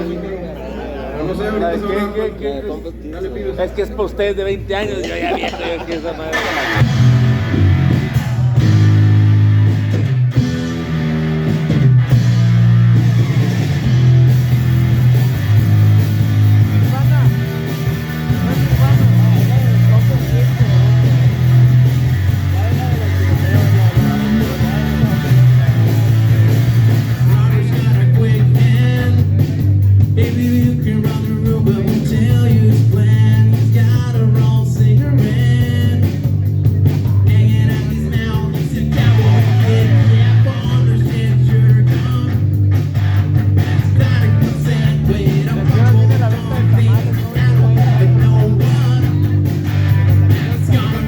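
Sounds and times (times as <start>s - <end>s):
driving bass line: 6.3s - 51.0s
electric guitar: 6.3s - 51.0s
live rock band: 6.3s - 51.0s
person singing: 27.1s - 29.6s, 30.2s - 36.4s, 37.0s - 42.6s, 43.6s - 49.5s, 50.1s - 51.0s.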